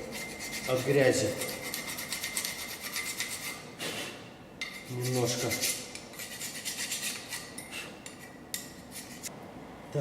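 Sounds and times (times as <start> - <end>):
hand file rasping on metal: 0.0 - 3.7, 4.6 - 9.3.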